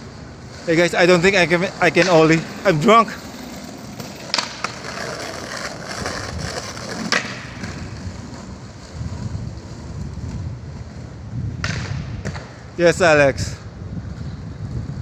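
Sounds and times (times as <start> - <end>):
skateboard clacking: 0.0 - 12.8
skateboard wheels rolling on paving: 0.0 - 15.0.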